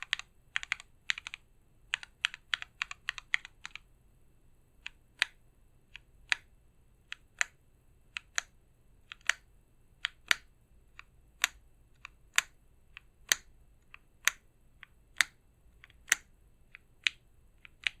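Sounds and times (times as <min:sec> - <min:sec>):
mechanical keyboard keystrokes clacking: 0:00.0 - 0:03.8.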